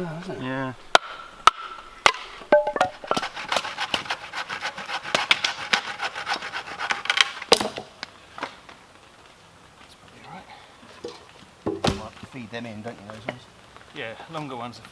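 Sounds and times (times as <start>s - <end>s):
knife cracking and scraping wood: 0.9s - 7.9s.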